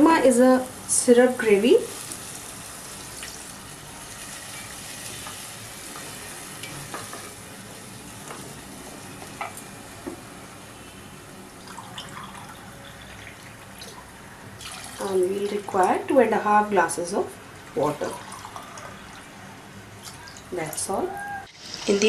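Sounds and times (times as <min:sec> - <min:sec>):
food sizzling in a pan: 0:00.0 - 0:15.7, 0:21.5 - 0:22.0.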